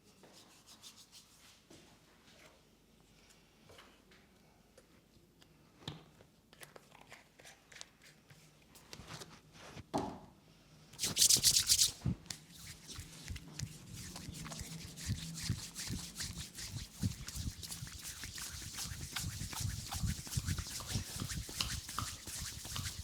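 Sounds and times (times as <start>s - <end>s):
hands rubbing skin: 11.0s - 23.0s.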